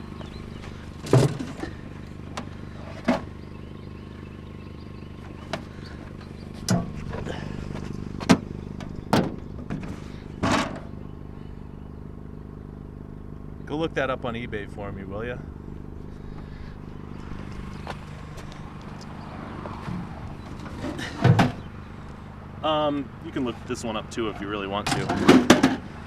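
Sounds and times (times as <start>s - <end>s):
steady low hum: 0.0s - 24.9s
objects knocking and clunking: 1.0s - 3.3s, 19.8s - 21.6s, 24.8s - 25.8s.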